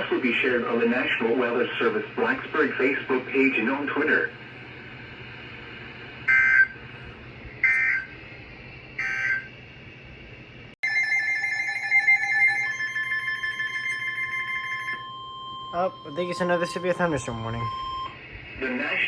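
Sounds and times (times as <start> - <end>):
steady electronic alert tone: 11.2 - 18.2
warbling data bursts: 15.7 - 18.1.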